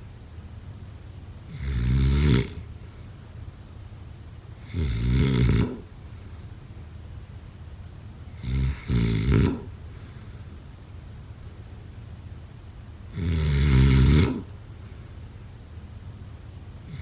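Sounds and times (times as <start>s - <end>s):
low steady hum: 0.0s - 17.0s
person snoring: 1.5s - 2.6s, 4.6s - 5.9s, 8.4s - 9.7s, 13.2s - 14.5s.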